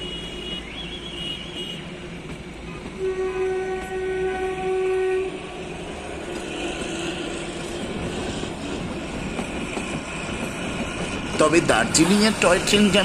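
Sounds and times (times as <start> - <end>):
train horn: 0.0 - 2.0, 2.6 - 8.0
train wheels rattling on track: 0.0 - 13.0.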